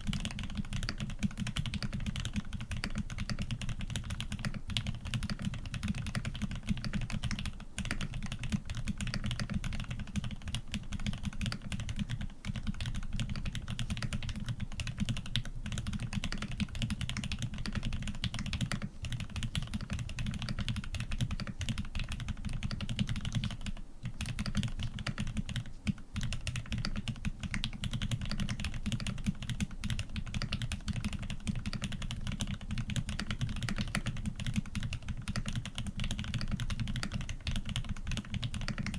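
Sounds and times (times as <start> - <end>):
fast typing on mechanical keyboard: 0.0 - 38.9.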